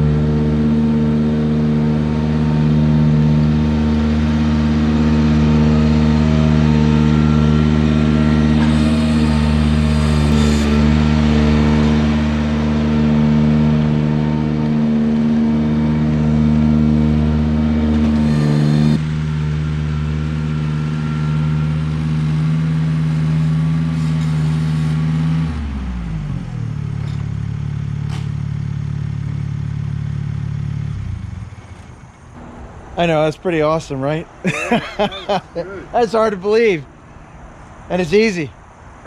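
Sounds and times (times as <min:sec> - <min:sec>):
tractor engine running: 0:00.0 - 0:33.9.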